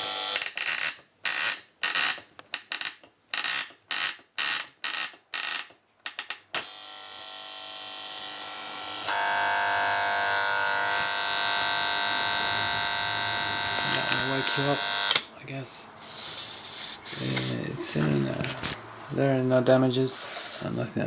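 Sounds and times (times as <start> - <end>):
alarm buzzer: 6.6 - 15.2.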